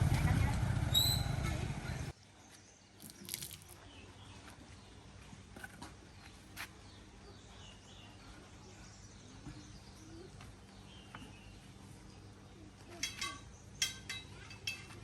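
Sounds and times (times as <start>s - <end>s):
bird chirps: 0.9s - 1.5s.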